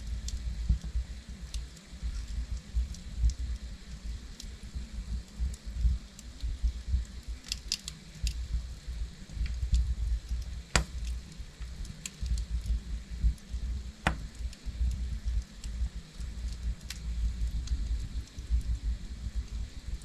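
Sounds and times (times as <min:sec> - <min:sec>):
burning logs crackling: 0:00.0 - 0:20.0
fire low rumble: 0:00.0 - 0:20.0.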